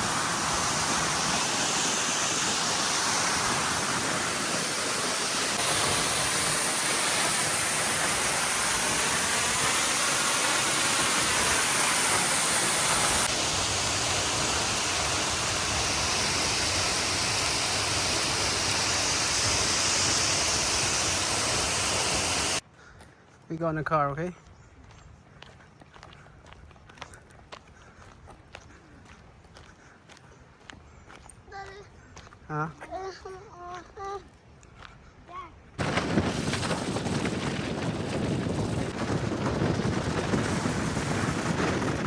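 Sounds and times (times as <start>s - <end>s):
waterfall rushing: 0.0s - 22.6s.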